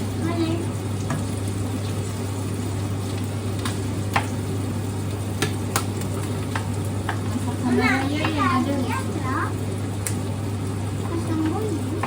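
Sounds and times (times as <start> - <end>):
food sizzling in a pan: 0.0 - 12.0
utensil clicking against pan: 3.6 - 4.4, 5.4 - 8.5.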